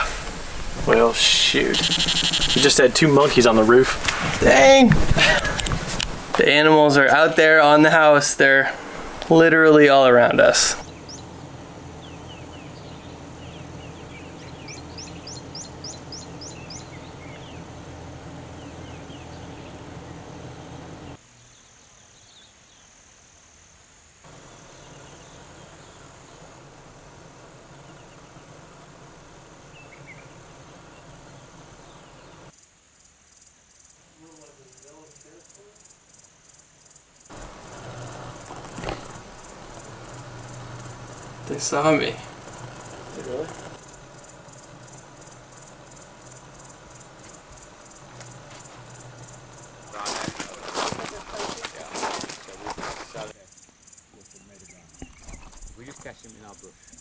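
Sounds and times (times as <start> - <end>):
bird chirps: 0.0 - 7.4, 10.3 - 17.8, 18.4 - 21.2, 54.2 - 57.0
high ticks: 0.0 - 12.5, 37.3 - 53.3
background hiss: 0.0 - 57.0
insects: 0.0 - 57.0.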